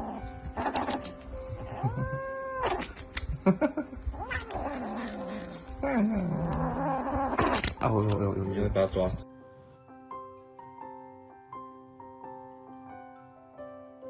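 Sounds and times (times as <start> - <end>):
cat yowling: 0.0 - 3.2, 4.1 - 7.8.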